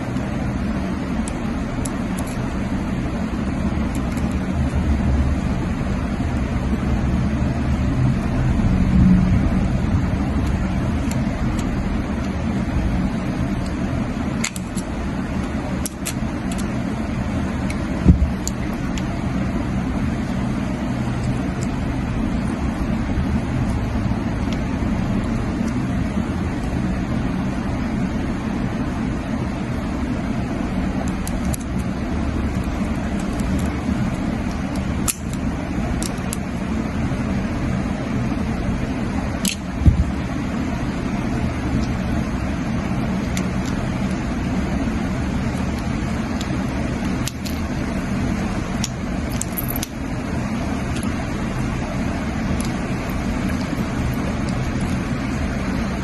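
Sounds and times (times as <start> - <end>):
low background rumble: 0.0 - 56.0
plug parts clicking: 14.4 - 16.7, 34.4 - 35.4, 39.4 - 40.1, 43.2 - 44.2, 45.5 - 47.6.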